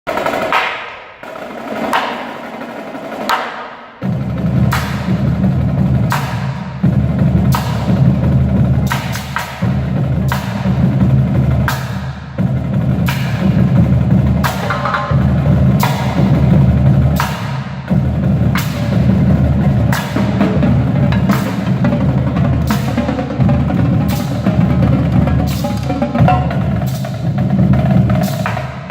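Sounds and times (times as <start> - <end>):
drum and wood block strokes: 0.1 - 2.6, 12.7 - 28.9.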